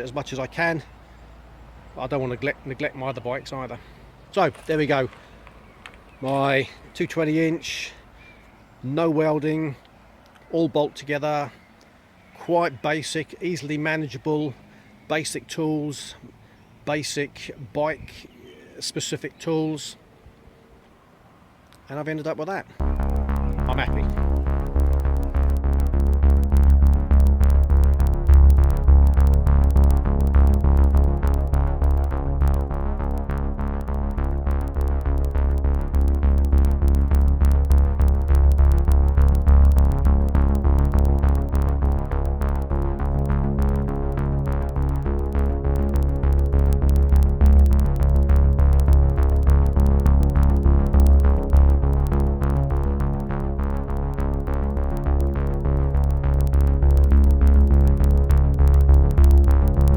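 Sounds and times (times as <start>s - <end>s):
drum-machine beat: 22.8s - 59.9s
electronic music: 22.8s - 59.9s
heavy bass line: 22.8s - 59.9s
synthesizer: 22.8s - 59.9s.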